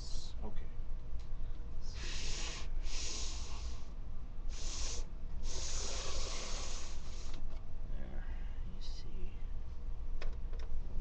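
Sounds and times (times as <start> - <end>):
person breathing noisily: 1.8 - 7.4.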